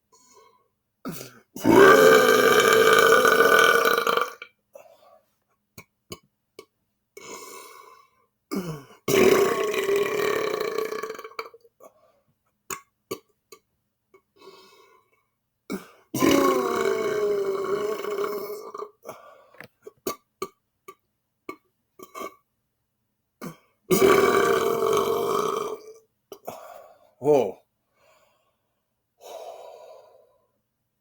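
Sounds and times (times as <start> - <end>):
man belching loudly: 1.6 - 4.5, 8.6 - 11.6, 16.2 - 19.0, 23.4 - 26.0.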